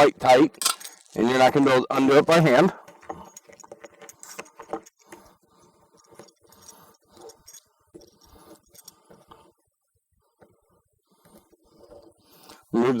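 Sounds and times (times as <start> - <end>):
metallic clicking of small tools: 0.6 - 1.2.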